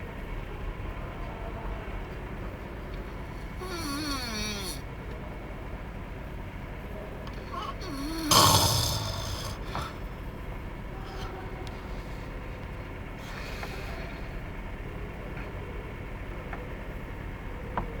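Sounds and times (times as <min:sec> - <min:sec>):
steady low hum: 0:00.0 - 0:17.7
man snoring: 0:03.4 - 0:04.8, 0:07.4 - 0:10.0.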